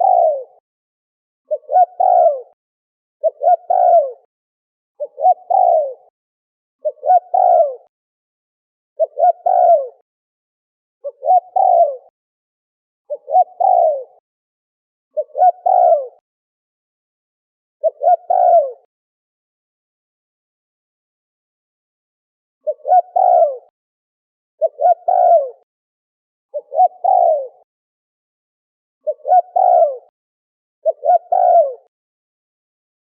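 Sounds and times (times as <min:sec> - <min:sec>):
dove cooing: 0:00.0 - 0:00.6, 0:01.5 - 0:02.6, 0:03.2 - 0:04.3, 0:05.0 - 0:06.1, 0:06.8 - 0:07.9, 0:09.0 - 0:10.0, 0:11.0 - 0:12.1, 0:13.1 - 0:14.2, 0:15.2 - 0:16.2, 0:17.8 - 0:18.9, 0:22.6 - 0:23.7, 0:24.6 - 0:25.6, 0:26.5 - 0:27.6, 0:29.0 - 0:30.1, 0:30.8 - 0:31.9.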